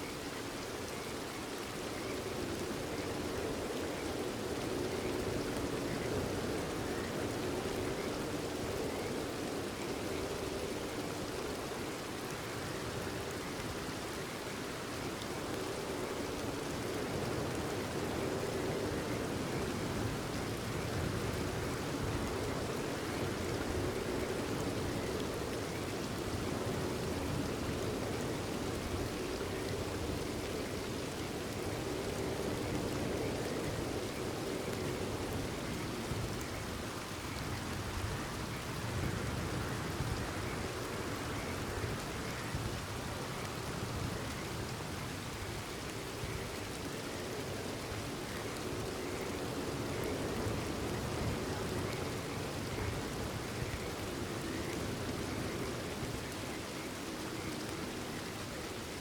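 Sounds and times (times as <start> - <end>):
steady rain falling: 0.0 - 59.0
faint frog calls: 28.7 - 59.0.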